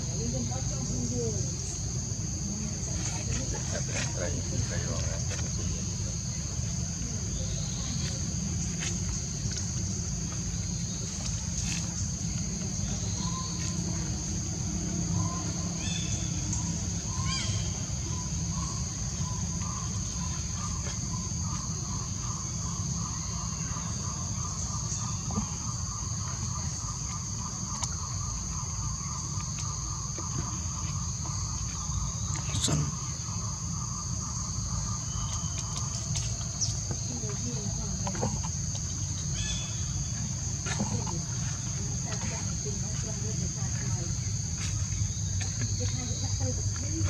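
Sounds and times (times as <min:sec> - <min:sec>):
high-pitched insect drone: 0:00.0 - 0:47.0
bird-like chirp: 0:15.1 - 0:37.4.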